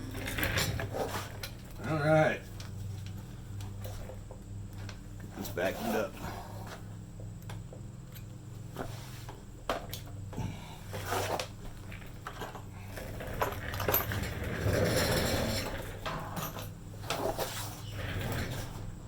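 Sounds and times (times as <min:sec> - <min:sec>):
steady low hum: 0:00.0 - 0:19.0
metal tools clinking: 0:11.9 - 0:17.2.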